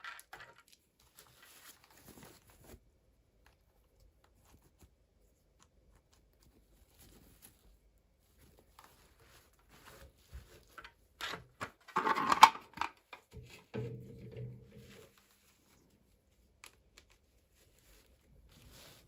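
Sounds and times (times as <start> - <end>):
plastic packaging clicks and rustles: 0.0 - 2.8, 8.7 - 14.0.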